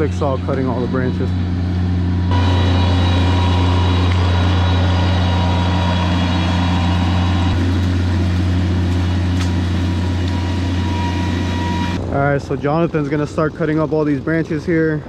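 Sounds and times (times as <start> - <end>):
engine droning: 0.0 - 12.0.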